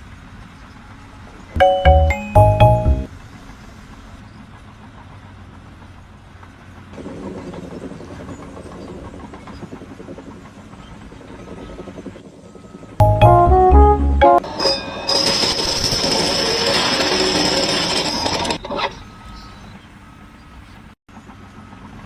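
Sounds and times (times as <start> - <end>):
bell-like jingle: 1.6 - 3.1.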